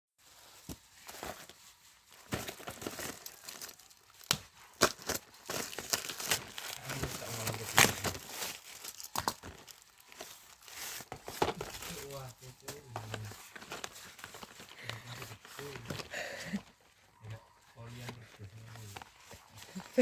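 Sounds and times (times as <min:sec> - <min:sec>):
packaging crinkling and tearing: 0:00.3 - 0:16.7.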